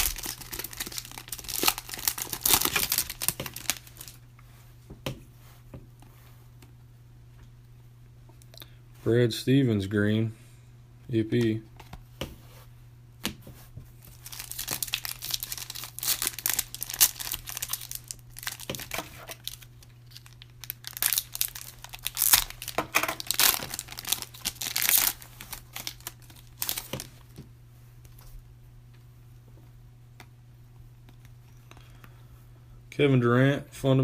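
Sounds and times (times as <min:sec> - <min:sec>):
card pack wrapper tearing: 0:00.0 - 0:04.2, 0:14.0 - 0:27.1.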